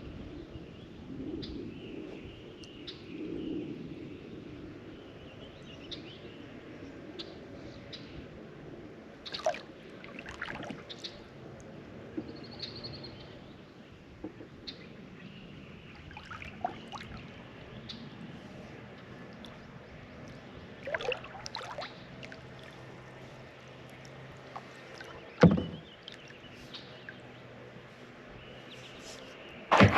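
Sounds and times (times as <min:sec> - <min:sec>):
low wash of river: 0:04.7 - 0:29.9
paddle strokes dipping and dripping: 0:09.3 - 0:12.4, 0:15.9 - 0:17.5, 0:18.5 - 0:28.0, 0:28.9 - 0:29.9
paddle knocking against kayak hull: 0:25.4 - 0:25.9.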